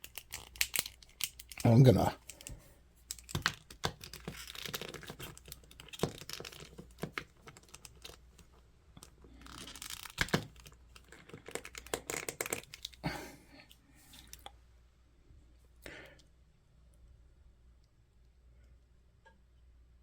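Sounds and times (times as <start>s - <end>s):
plastic figure clicking and rubbing: 0.0s - 13.0s.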